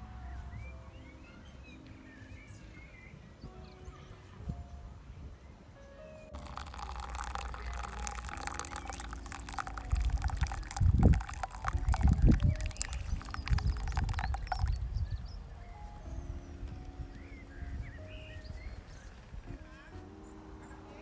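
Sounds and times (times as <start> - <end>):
liquid pouring and trickling: 6.3 - 14.9.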